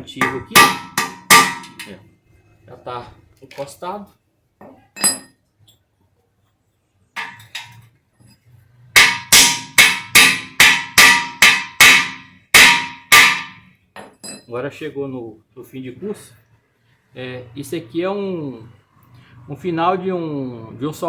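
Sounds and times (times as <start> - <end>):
hammer striking metal: 0.2 - 2.0, 7.2 - 7.8, 8.9 - 13.7.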